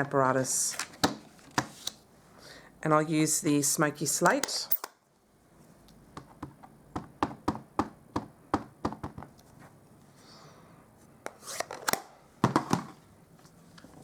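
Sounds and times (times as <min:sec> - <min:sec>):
rubber stamp tapping ink pad: 0:06.1 - 0:09.3.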